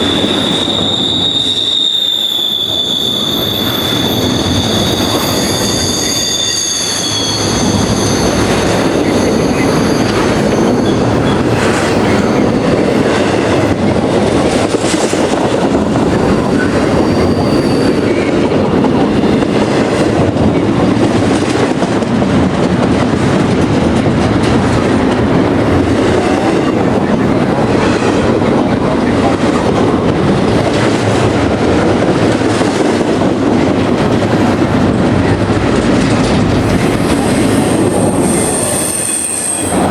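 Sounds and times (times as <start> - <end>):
high wheel squeal: 0.0 - 13.6, 16.0 - 19.6, 36.6 - 39.9
freight train wheels rumbling: 0.0 - 39.9.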